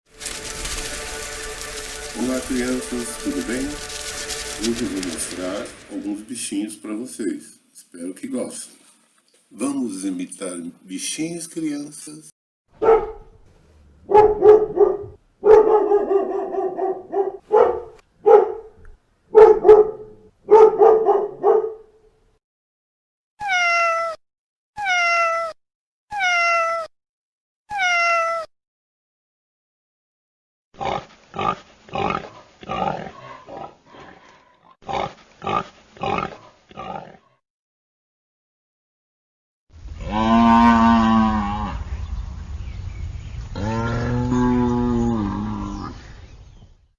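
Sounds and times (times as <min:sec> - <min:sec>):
dog barking: 0:12.8 - 0:13.3, 0:14.0 - 0:22.0
cat meowing: 0:23.4 - 0:24.2, 0:24.8 - 0:26.9, 0:27.7 - 0:28.5.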